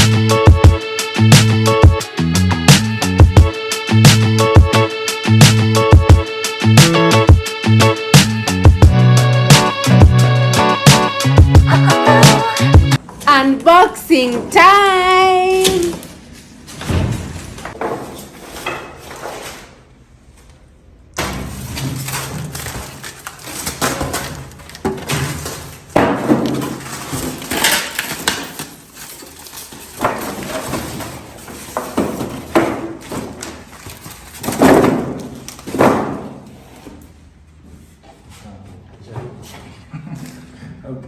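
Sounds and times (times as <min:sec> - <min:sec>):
packaging knocks and scrapes: 0:21.4 - 0:37.0
packaging rustling: 0:21.8 - 0:25.9, 0:26.6 - 0:35.7.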